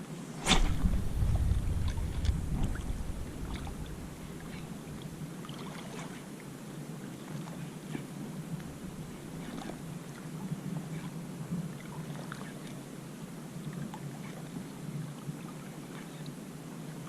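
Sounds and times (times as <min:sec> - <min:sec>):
river water lapping: 0:00.1 - 0:12.9
low rumble: 0:00.3 - 0:05.2.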